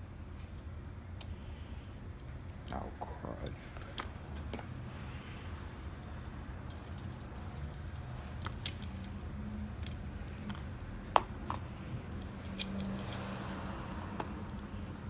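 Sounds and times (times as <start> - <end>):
steady low hum: 0.0 - 15.0
small metal parts clicking: 6.0 - 10.7, 11.4 - 15.0.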